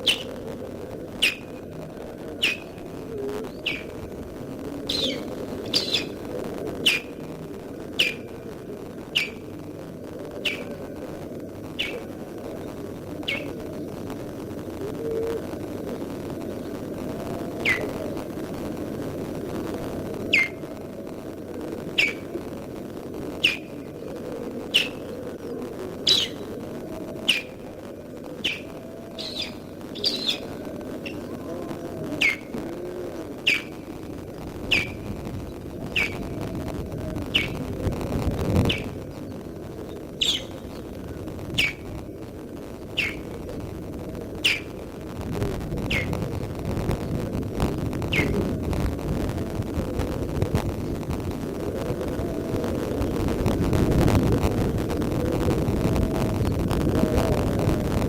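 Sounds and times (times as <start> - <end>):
bird alarm calls: 1.2 - 1.6, 2.4 - 4.0, 4.9 - 7.2, 7.9 - 8.4, 9.0 - 9.5, 21.9 - 22.3, 23.4 - 23.8, 24.6 - 25.2, 26.0 - 26.6, 27.2 - 27.7, 28.4 - 31.4, 32.2 - 32.5, 33.4 - 33.8, 34.7 - 35.1, 40.0 - 40.9, 41.6 - 41.9, 42.9 - 43.4, 44.4 - 44.8.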